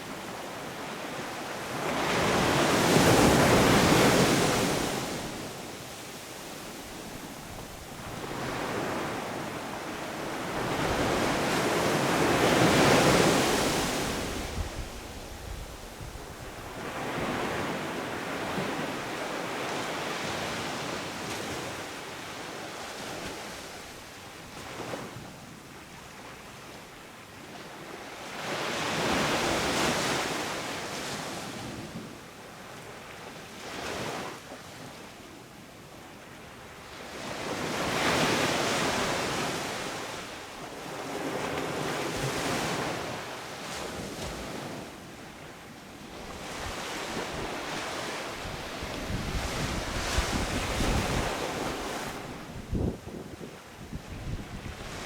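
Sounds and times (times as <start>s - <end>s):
waves breaking on sand beach: 0.0s - 25.2s, 37.2s - 55.0s.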